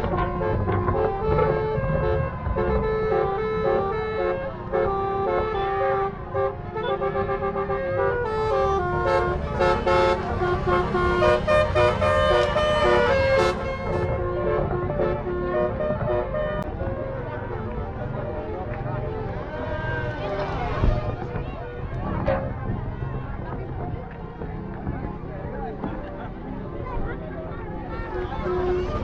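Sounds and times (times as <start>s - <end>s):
multi-tone air horn tune: 0.0s - 16.8s
engine and road rumble: 0.0s - 29.0s.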